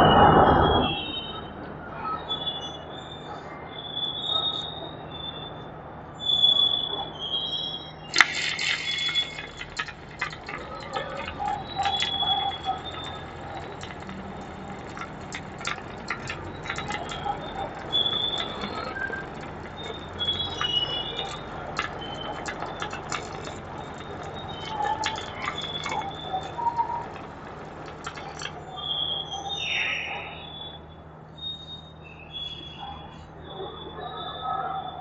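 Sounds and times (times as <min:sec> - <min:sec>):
welding arc crackling: 0:08.1 - 0:29.6.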